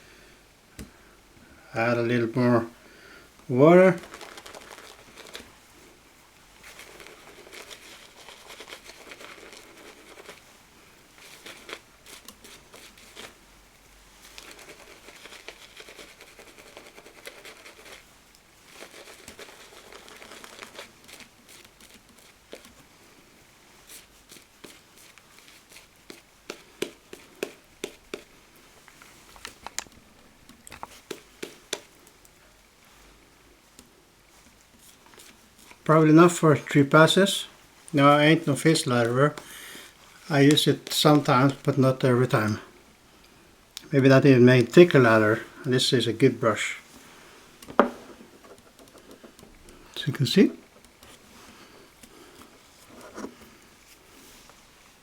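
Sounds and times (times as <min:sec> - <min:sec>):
shaving brush wet crackling: 0:03.5 - 0:05.6, 0:06.6 - 0:10.5, 0:11.2 - 0:29.8, 0:30.8 - 0:32.3, 0:34.3 - 0:42.6, 0:43.8 - 0:46.9.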